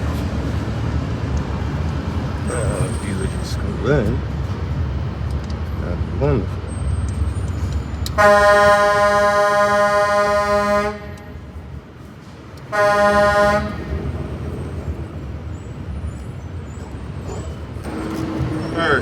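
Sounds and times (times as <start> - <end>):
vehicle horn blasts: 8.2 - 11.4, 12.7 - 14.0.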